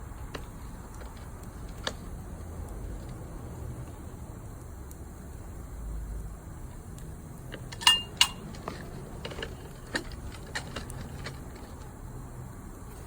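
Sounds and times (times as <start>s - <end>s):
metal clinking: 7.5s - 11.9s.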